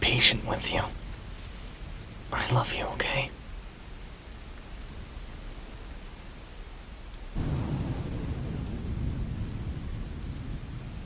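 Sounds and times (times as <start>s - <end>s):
steady rain: 0.0s - 11.0s
thunder rumbling: 7.4s - 11.0s.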